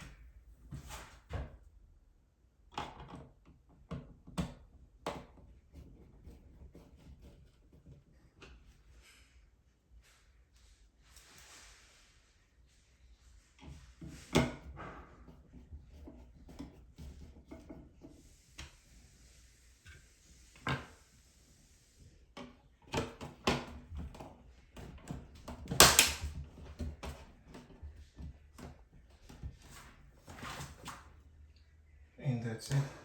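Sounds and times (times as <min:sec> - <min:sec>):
clicks and knocks handling outlet: 0:25.6 - 0:26.4.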